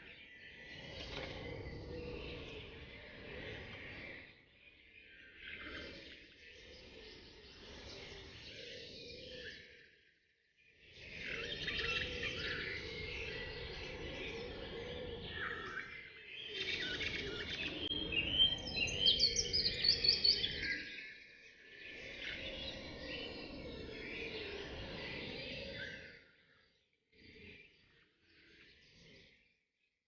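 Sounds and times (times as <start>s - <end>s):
songbirds chirping and singing: 0.0s - 29.6s.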